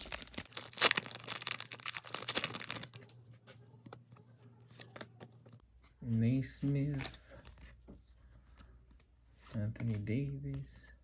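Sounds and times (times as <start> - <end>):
wrapper crinkling and tearing: 0.0 - 3.2.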